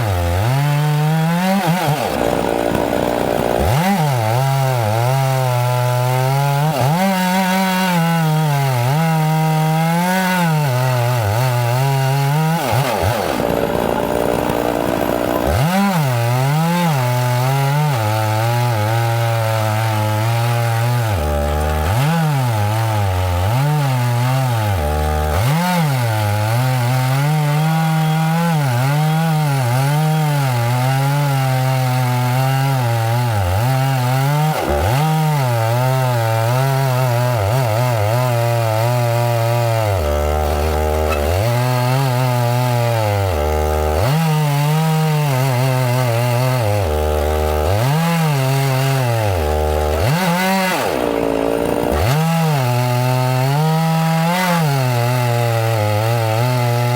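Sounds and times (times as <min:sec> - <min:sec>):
chainsaw cutting wood: 0:00.0 - 0:56.9.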